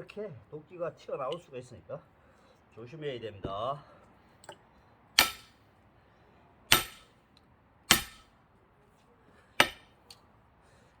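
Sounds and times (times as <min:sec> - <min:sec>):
axe striking log: 0:05.2 - 0:05.5, 0:06.7 - 0:07.1, 0:07.9 - 0:08.3, 0:09.6 - 0:09.9.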